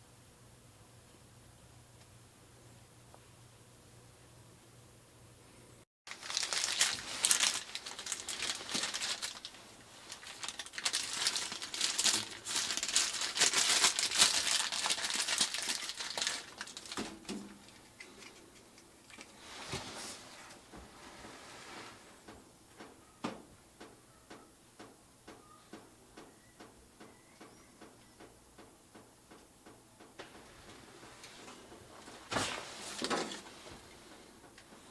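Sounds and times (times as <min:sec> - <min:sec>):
crinkling and rustling handling noise: 0:06.1 - 0:23.5, 0:30.1 - 0:34.9.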